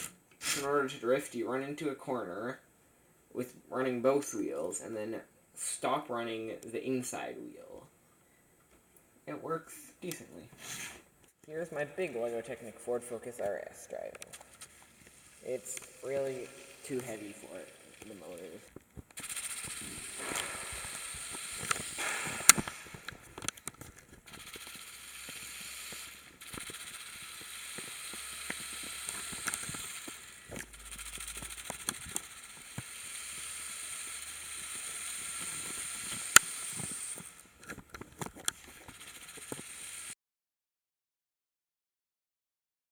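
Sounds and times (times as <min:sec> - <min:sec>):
gears clicking and ticking: 0:14.2 - 0:40.2
electric motors whining: 0:14.6 - 0:40.1.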